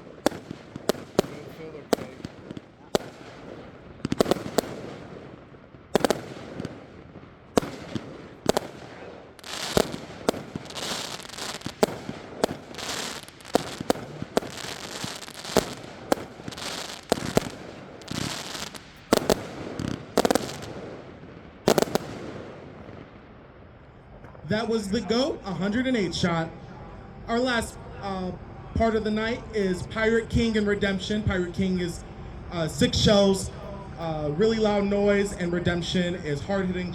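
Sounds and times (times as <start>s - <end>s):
fireworks bangs: 0.0s - 26.5s
fireworks crackling hiss: 0.0s - 26.6s.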